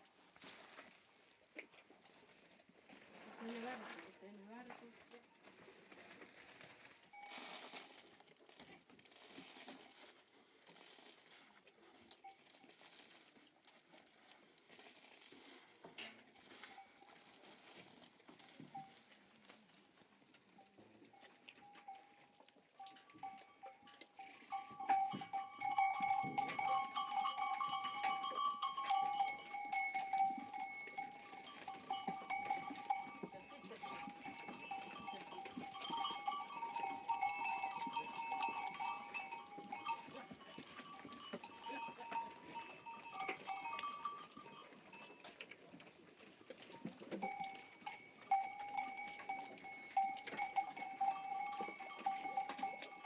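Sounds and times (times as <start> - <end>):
livestock bells clinking: 7.0 - 7.8, 16.4 - 17.5, 20.6 - 53.0.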